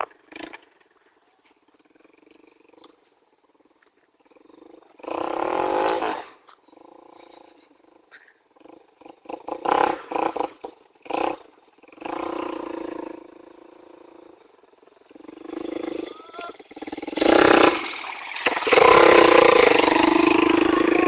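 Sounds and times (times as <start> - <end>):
engine revving through loud exhaust: 4.4 - 7.4, 8.6 - 21.0.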